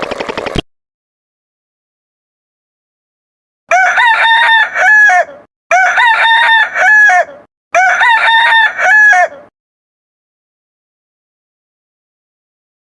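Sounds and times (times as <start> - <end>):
rooster crowing: 3.7 - 9.5.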